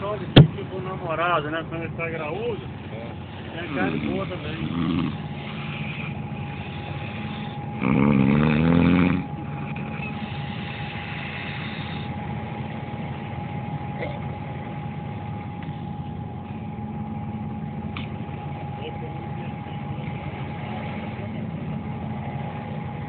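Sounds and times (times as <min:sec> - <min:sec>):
boat engine humming: 0:00.0 - 0:23.0
man snoring: 0:03.8 - 0:05.2, 0:07.8 - 0:09.3.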